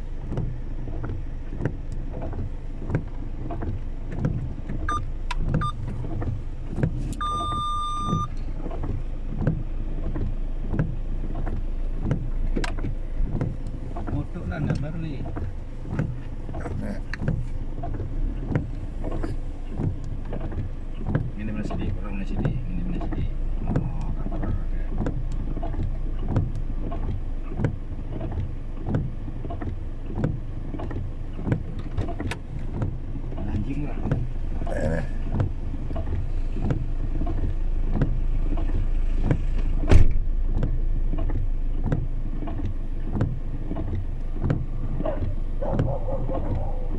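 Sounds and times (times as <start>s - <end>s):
car cabin rumble: 0.0s - 46.9s
electronic beep: 7.2s - 8.3s.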